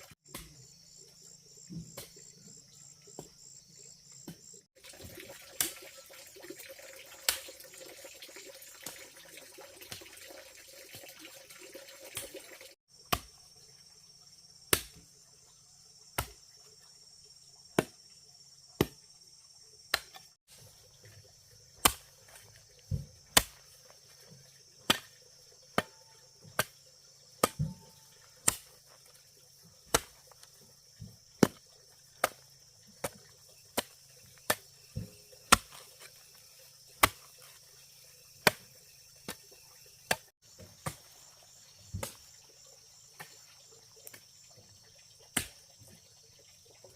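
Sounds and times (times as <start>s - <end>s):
insect chirring: 12.4s - 46.9s
tool chopping strikes: 13.1s - 13.3s, 14.7s - 15.0s, 21.8s - 22.1s, 22.9s - 23.6s, 27.4s - 28.7s, 37.0s - 37.3s.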